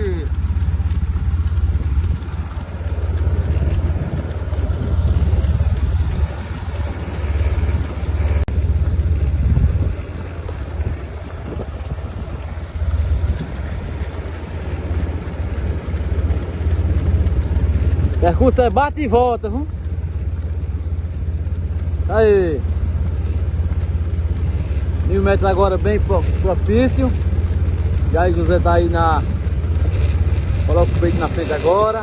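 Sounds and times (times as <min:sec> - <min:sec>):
vehicle running: 0:00.0 - 0:32.0
wind buffeting microphone: 0:00.0 - 0:32.0.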